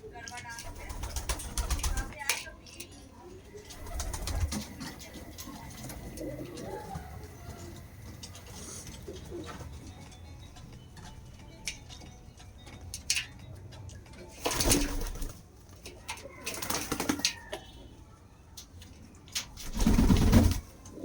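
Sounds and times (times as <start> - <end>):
wing flapping: 0.6 - 2.2, 3.7 - 7.0, 14.4 - 15.4, 16.3 - 17.5, 19.6 - 20.8
pigeons cooing: 3.6 - 10.2, 19.6 - 21.0.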